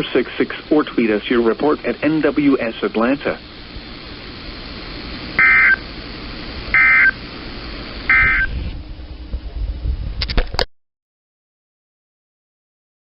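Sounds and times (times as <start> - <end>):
radio receiver hiss: 0.0 - 9.4
two-tone digital data bursts: 5.4 - 5.8, 6.7 - 7.2, 8.1 - 8.5.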